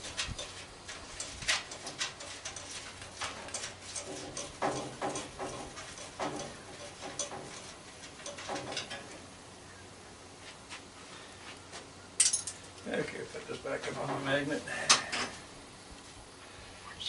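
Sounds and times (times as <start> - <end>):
small metal tools clinking: 0.0 - 9.2, 12.2 - 12.8.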